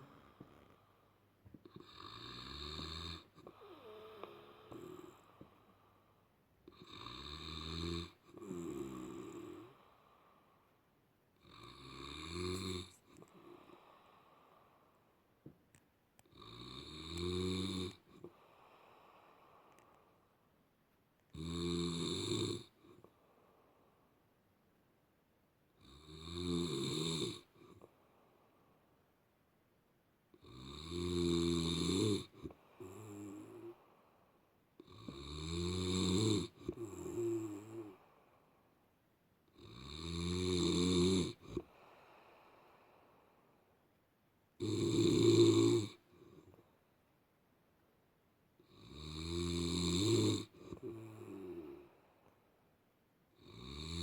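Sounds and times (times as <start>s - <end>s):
person snoring loudly: 0.0s - 0.8s, 1.6s - 5.5s, 6.7s - 9.9s, 11.4s - 13.8s, 16.3s - 18.4s, 21.4s - 22.8s, 25.8s - 27.6s, 30.4s - 33.8s, 34.8s - 38.1s, 39.6s - 41.8s, 44.6s - 46.4s, 48.6s - 51.9s, 53.4s - 54.0s.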